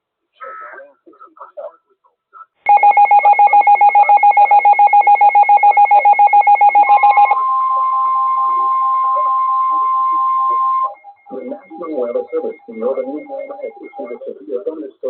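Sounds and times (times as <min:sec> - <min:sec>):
steady alarm tone: 0:02.7 - 0:14.4
rapidly pulsing electronic tone: 0:10.6 - 0:14.7.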